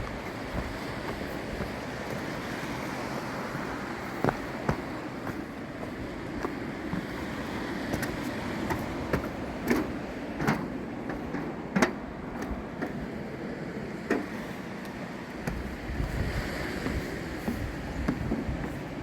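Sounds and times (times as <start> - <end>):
footsteps on a path: 0.0 - 9.7, 14.2 - 19.0
surf rushing: 0.0 - 14.8
wind: 0.0 - 19.0.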